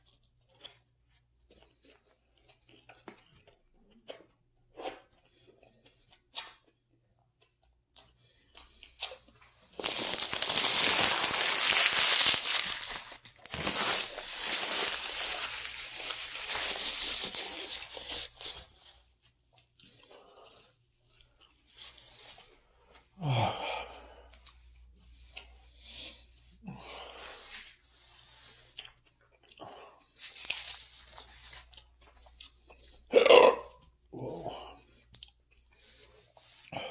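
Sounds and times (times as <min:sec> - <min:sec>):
wrapper tearing and crinkling: 0:09.7 - 0:18.6, 0:30.2 - 0:31.7.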